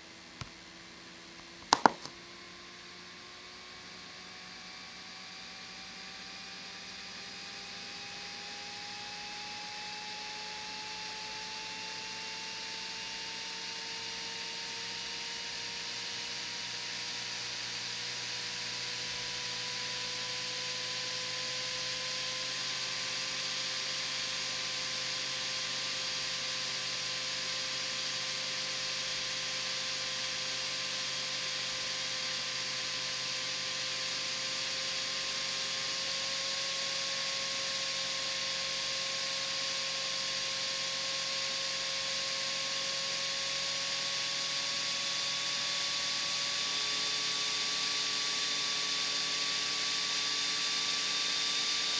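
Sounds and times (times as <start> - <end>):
laptop cooling fan whirring: 0.0 - 51.9.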